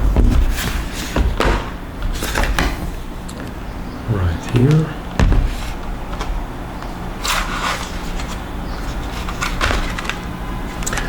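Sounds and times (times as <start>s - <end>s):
steady low hum: 0.0s - 11.0s
packaging rustling scrapes: 7.2s - 11.0s.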